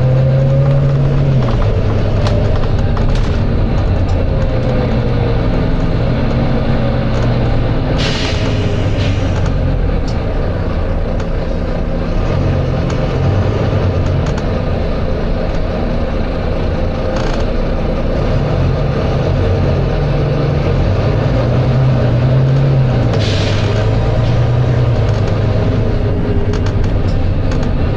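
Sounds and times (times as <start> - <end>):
bus engine drone: 0.0 - 27.9
road noise: 0.0 - 27.9
air hisses: 8.0 - 9.4.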